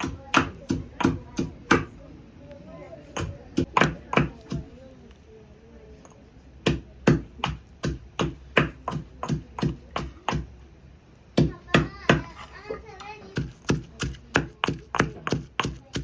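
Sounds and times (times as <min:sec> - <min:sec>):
knife chopping on cutting board: 0:13.3 - 0:16.0.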